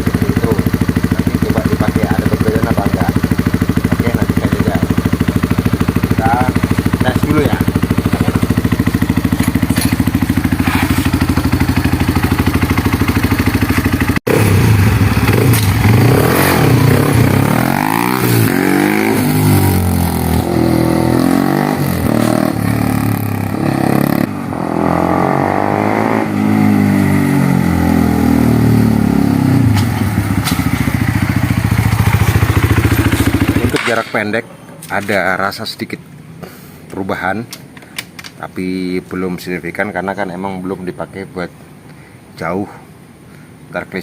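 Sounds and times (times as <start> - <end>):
motorcycle engine idling: 0.0 - 24.3, 27.5 - 34.2
motorcycle revving and accelerating: 0.0 - 34.1.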